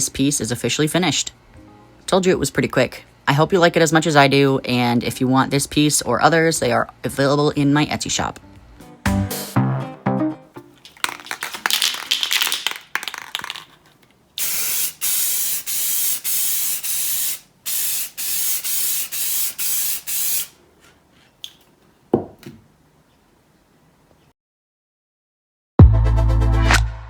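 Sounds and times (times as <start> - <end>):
crackly rattle: 10.9 - 14.2
aerosol spray can hissing: 11.0 - 13.7, 14.4 - 20.6.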